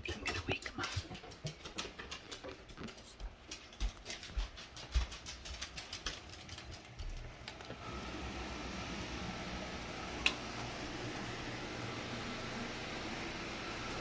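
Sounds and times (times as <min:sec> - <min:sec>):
dog claws clicking on hard floor: 0:00.1 - 0:07.8.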